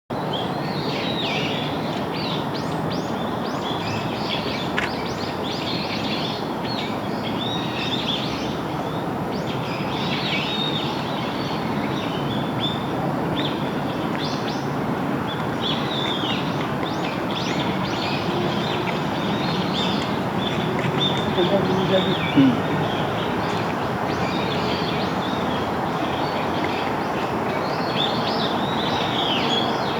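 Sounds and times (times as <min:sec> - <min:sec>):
bird singing: 0:02.3 - 0:29.9.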